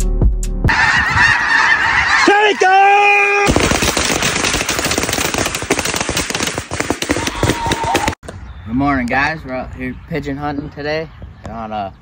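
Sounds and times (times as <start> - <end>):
waterfowl honking: 0.7 - 3.4.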